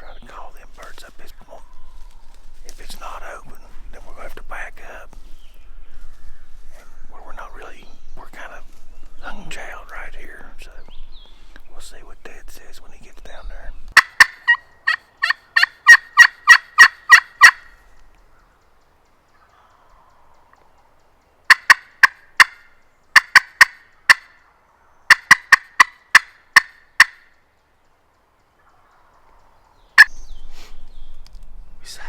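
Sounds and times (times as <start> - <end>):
turkey call yelps: 14.0 - 17.8, 21.5 - 24.5, 25.1 - 27.3.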